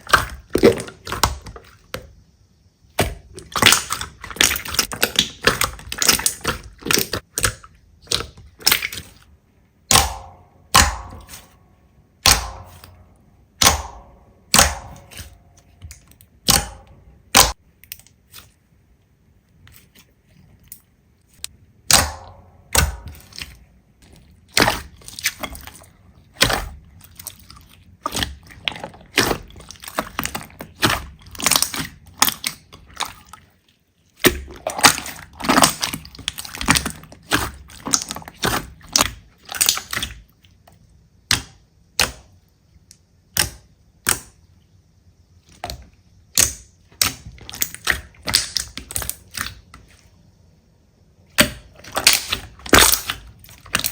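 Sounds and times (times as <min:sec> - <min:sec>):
slime popping and crackling: 0:03.3 - 0:09.2, 0:24.2 - 0:32.8, 0:34.2 - 0:40.2, 0:46.3 - 0:49.6, 0:51.3 - 0:53.9.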